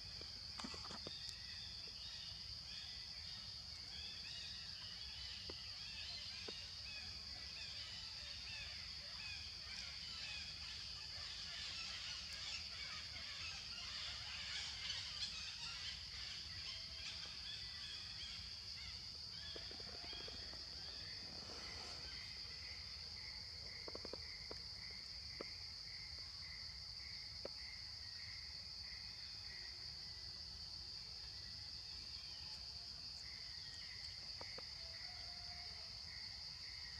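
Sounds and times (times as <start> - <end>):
high insect drone: 0.0 - 36.9.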